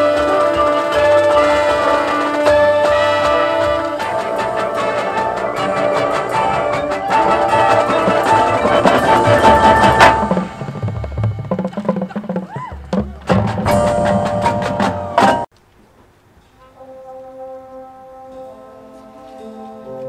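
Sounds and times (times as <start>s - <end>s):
marching band playing: 0.0s - 15.5s
sharp percussion hits: 0.0s - 15.5s.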